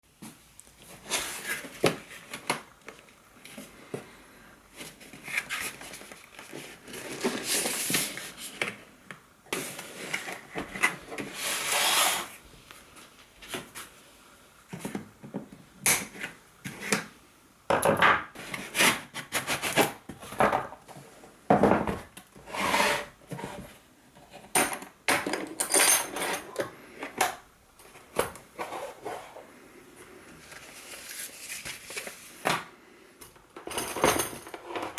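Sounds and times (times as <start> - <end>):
packaging rustling and scraping: 0.8 - 8.9, 9.5 - 14.0, 27.9 - 32.5.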